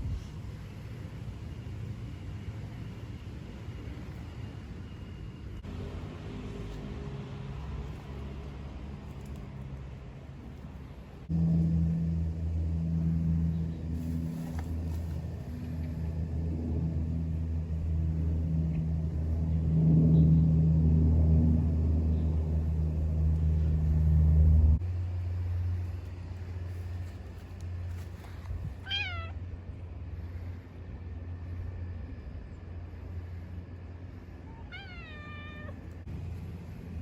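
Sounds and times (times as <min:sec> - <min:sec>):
steady low rumble: 0:00.0 - 0:37.0
cat meowing: 0:28.8 - 0:29.4, 0:34.5 - 0:35.8.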